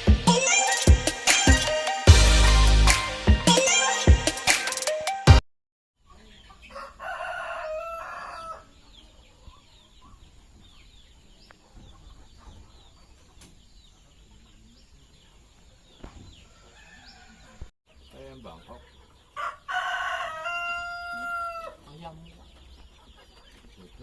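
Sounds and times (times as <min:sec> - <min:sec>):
chickens chirping and clucking: 0:06.0 - 0:24.0
rooster crowing: 0:06.7 - 0:08.7, 0:16.4 - 0:17.7, 0:19.4 - 0:21.8.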